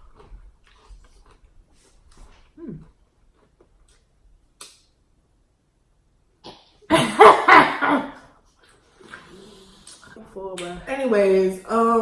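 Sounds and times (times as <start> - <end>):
mouth sounds of eating: 0.0 - 4.1
loud cough: 6.9 - 8.2.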